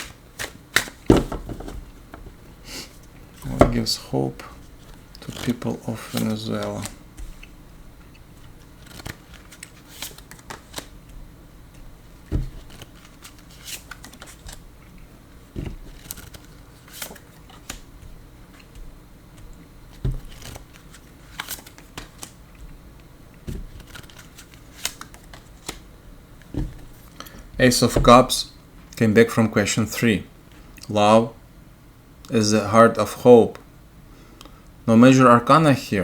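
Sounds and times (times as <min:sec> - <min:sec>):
cards shuffling: 0:00.0 - 0:01.8, 0:04.8 - 0:07.6, 0:08.4 - 0:14.6, 0:15.6 - 0:22.4, 0:23.5 - 0:25.8
cards tapped down: 0:08.8 - 0:10.9, 0:18.6 - 0:22.4.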